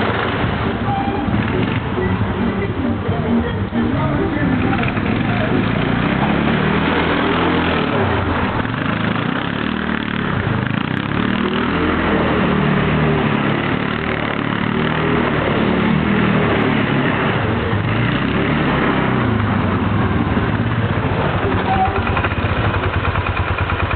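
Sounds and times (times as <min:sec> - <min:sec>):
atv engine running: 0:00.0 - 0:23.9.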